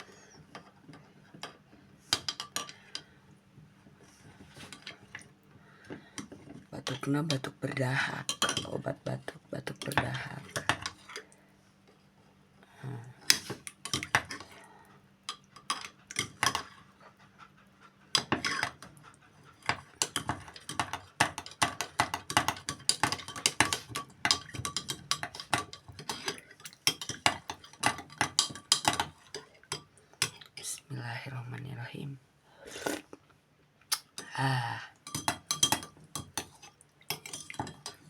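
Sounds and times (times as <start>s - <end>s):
spoon clinking against a dish: 20.0s - 30.4s, 35.0s - 38.0s.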